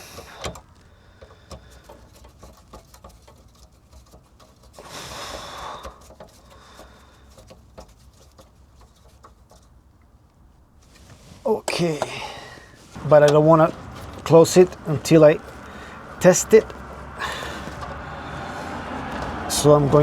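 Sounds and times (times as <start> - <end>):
clicks and taps of parts: 0.0 - 9.8
rustling scrape: 1.7 - 9.8, 10.8 - 11.7, 12.5 - 18.8.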